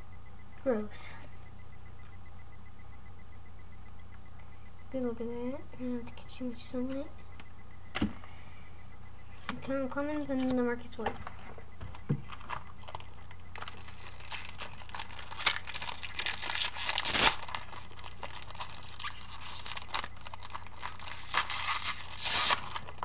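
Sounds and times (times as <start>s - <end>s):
wrapper tearing and crinkling: 12.3s - 23.0s.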